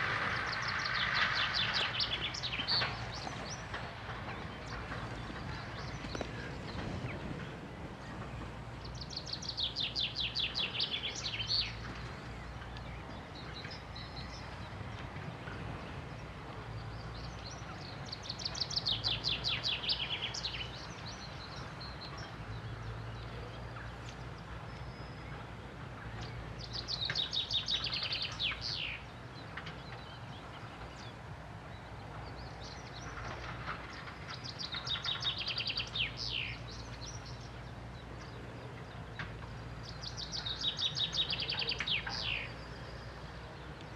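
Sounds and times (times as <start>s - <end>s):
low engine hum: 0.0s - 43.9s
songbird trilling: 17.4s - 22.4s, 34.3s - 37.7s, 39.8s - 43.2s.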